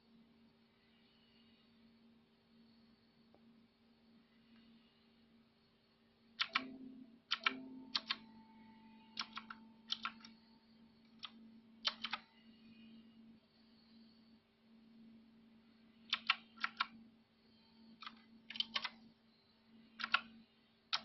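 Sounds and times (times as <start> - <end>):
faint low hum: 0.0 - 21.0
mechanical keyboard clicks: 6.4 - 8.2, 9.2 - 10.4, 11.2 - 12.2, 16.1 - 17.0, 18.0 - 19.0, 20.0 - 20.3.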